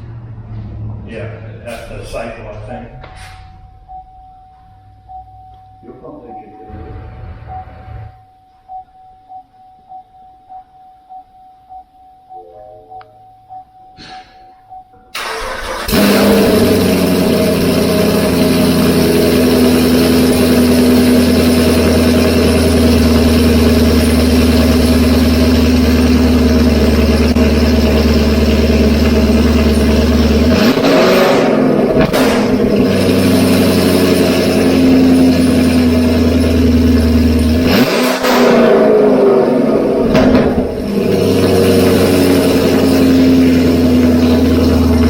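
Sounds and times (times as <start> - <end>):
car engine idling loudly: 15.8 - 45.0.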